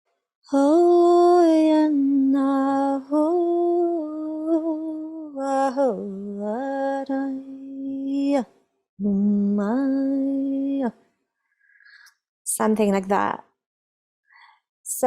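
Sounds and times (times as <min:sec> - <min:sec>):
woman singing long wordless notes: 0:00.5 - 0:11.0.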